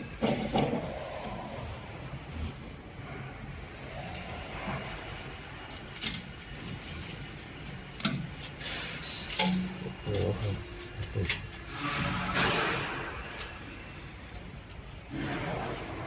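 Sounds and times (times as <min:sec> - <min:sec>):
steady low hum: 0:00.0 - 0:16.0
handling clicks and knocks: 0:04.2 - 0:16.0.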